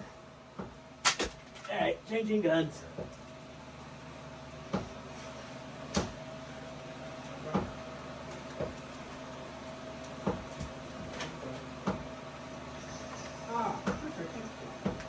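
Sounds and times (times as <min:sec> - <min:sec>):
faint hum: 0:00.0 - 0:15.0.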